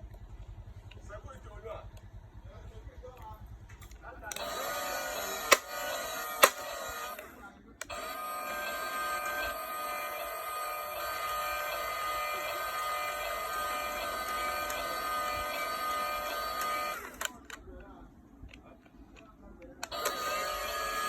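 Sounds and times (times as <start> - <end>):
sharp clicks: 3.1 - 21.0
toy motors whining: 4.2 - 17.7, 18.5 - 21.0.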